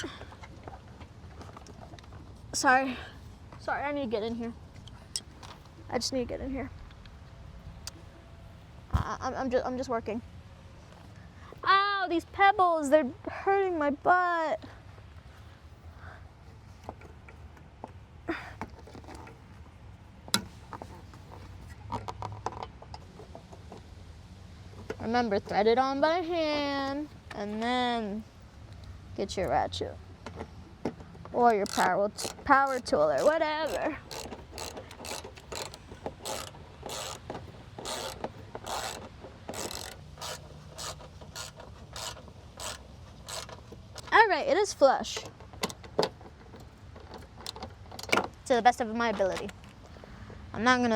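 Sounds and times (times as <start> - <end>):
hand ratchet clicking: 31.4 - 44.1.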